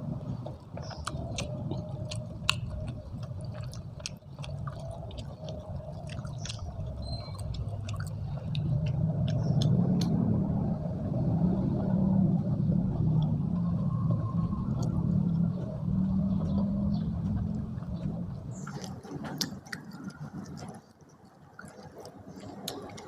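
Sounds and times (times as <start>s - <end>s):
person chewing food: 0.0s - 10.2s, 17.2s - 21.0s, 21.6s - 23.0s
low steady rumble: 0.0s - 21.0s.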